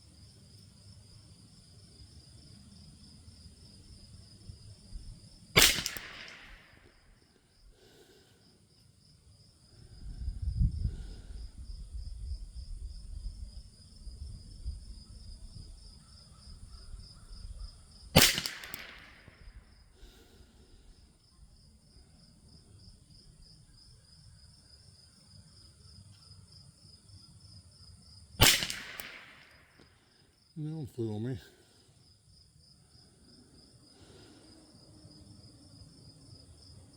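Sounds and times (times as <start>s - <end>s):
rifle shots: 5.6s - 6.9s, 18.2s - 19.4s, 28.4s - 29.7s
insects buzzing: 21.0s - 36.9s.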